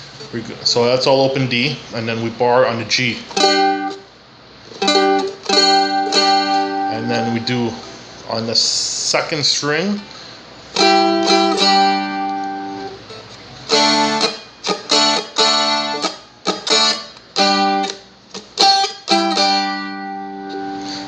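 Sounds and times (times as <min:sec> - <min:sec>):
strummed string instrument: 0:03.3 - 0:04.0, 0:04.7 - 0:07.9, 0:10.8 - 0:13.0, 0:13.7 - 0:18.0, 0:18.6 - 0:21.0.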